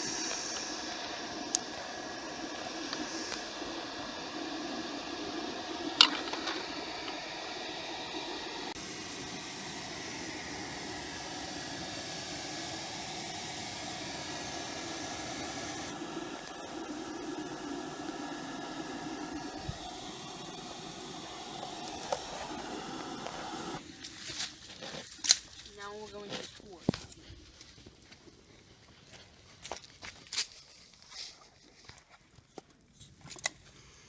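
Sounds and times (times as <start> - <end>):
furnace air blast hissing: 0.0 - 23.8.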